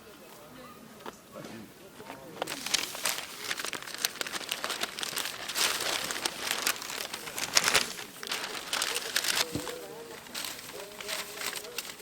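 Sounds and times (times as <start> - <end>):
crinkling of crackly material: 0.2 - 12.0.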